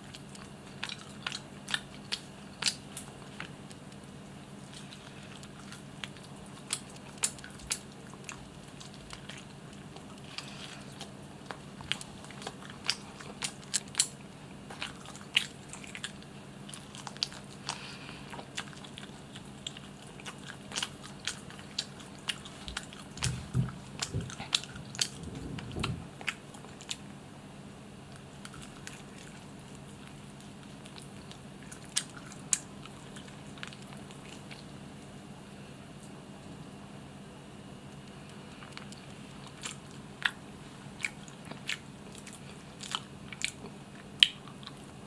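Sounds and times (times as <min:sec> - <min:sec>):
chewing and crunching: 0:00.0 - 0:27.2, 0:28.0 - 0:36.5, 0:37.9 - 0:45.0
dull low thumps: 0:23.2 - 0:26.2.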